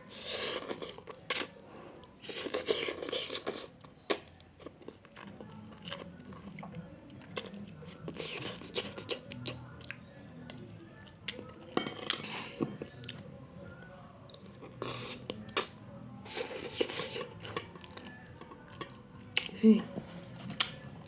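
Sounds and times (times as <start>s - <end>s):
faint background music: 0.0s - 21.0s
person chewing noodles: 0.1s - 10.0s, 14.3s - 15.7s, 16.3s - 19.6s.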